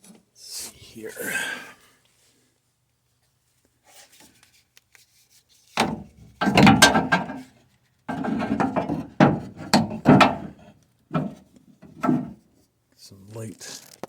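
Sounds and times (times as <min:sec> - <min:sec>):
scraping and rubbing in car door: 0:05.8 - 0:07.5, 0:08.1 - 0:12.4
sharp knocks: 0:05.8 - 0:07.5, 0:08.1 - 0:12.4.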